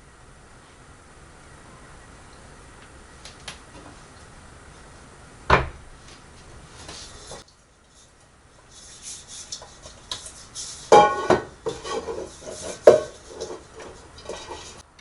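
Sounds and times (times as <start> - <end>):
rustling: 6.0 - 14.8.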